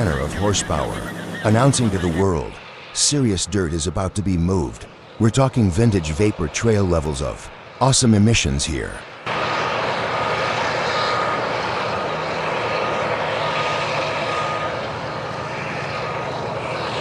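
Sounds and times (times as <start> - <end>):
reversing alarm beeping: 0.0 - 2.4
bulldozer diesel engine running: 0.0 - 2.6.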